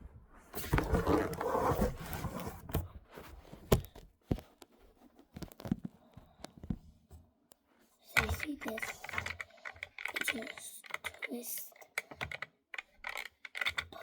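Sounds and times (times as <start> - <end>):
plastic parts scraping and rustling: 0.5 - 6.9, 8.1 - 14.0
plastic clicks and knocks: 5.4 - 6.8, 8.2 - 14.0.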